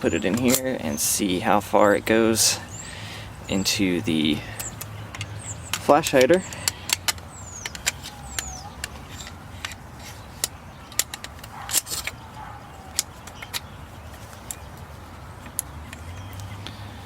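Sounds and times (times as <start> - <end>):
rifle parts clicking and knocking: 0.1 - 0.8, 4.6 - 16.5.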